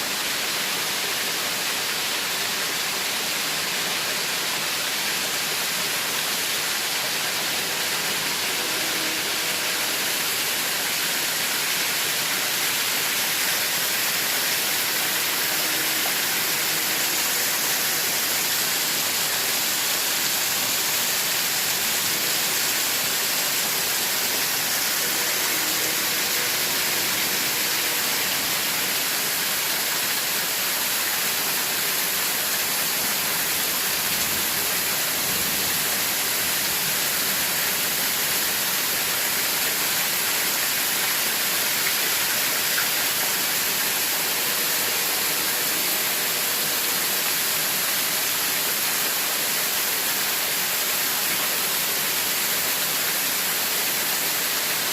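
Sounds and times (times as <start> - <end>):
steady static hiss: 0.0 - 54.9.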